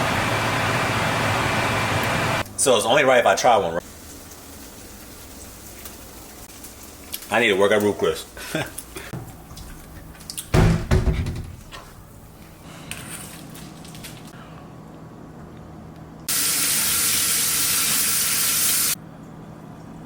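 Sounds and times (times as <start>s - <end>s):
dull thumps: 10.5s - 12.0s
kitchen faucet running: 16.3s - 19.0s.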